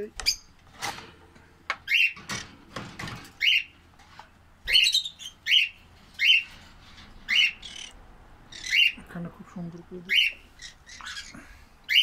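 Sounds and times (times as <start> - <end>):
conure calling: 4.7 - 6.6, 7.2 - 9.1, 10.1 - 12.0.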